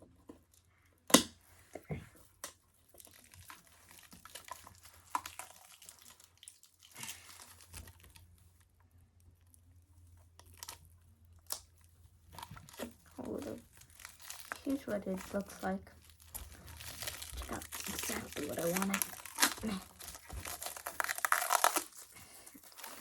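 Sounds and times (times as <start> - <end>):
packaging rustling and tearing: 2.8 - 8.4, 10.4 - 10.8, 11.4 - 23.0.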